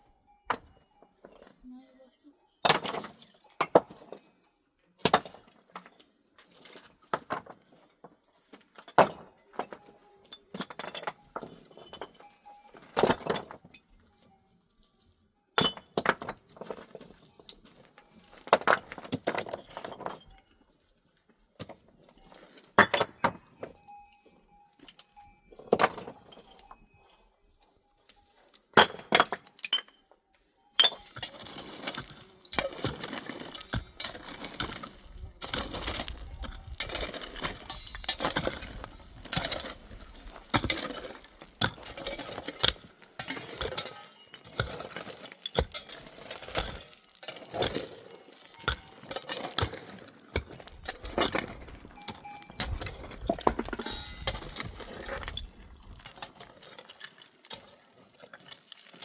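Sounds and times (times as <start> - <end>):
stones knocking together: 30.8 - 56.6.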